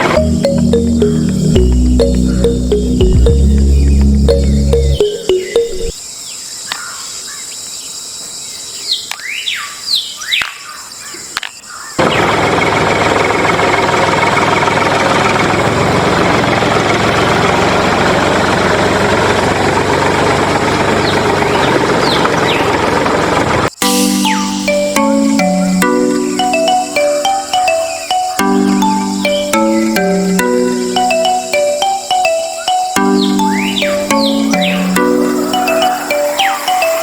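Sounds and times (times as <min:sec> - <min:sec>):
birds chirping: 0:00.0 - 0:07.7, 0:23.8 - 0:37.0
high insect drone: 0:00.0 - 0:11.9, 0:23.8 - 0:37.0.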